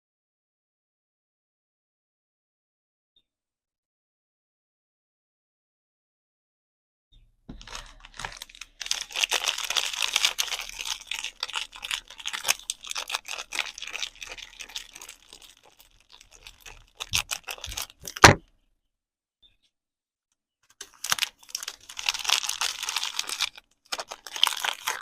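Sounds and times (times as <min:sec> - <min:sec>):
wrapper crinkling and tearing: 0:07.5 - 0:18.4, 0:20.7 - 0:25.0.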